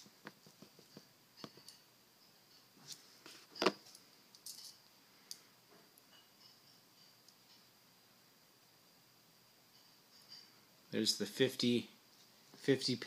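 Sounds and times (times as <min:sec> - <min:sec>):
coins clinking: 0:04.4 - 0:04.8.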